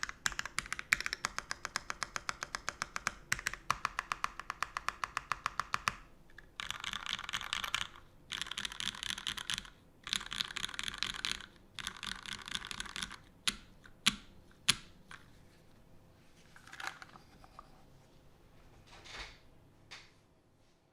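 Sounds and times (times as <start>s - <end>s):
mechanical keyboard typing: 0.0s - 15.2s.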